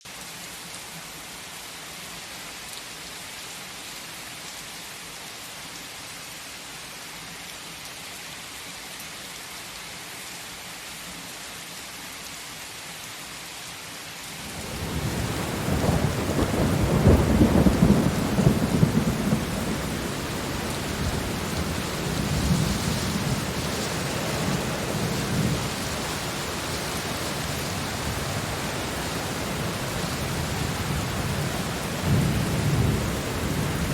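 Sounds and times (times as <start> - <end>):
steady rain hissing: 0.0 - 33.9
thunder rolling: 14.4 - 33.9.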